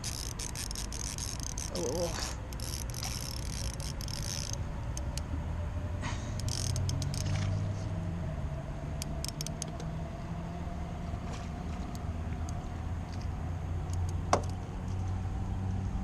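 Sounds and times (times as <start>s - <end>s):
motor humming: 0.0s - 5.4s.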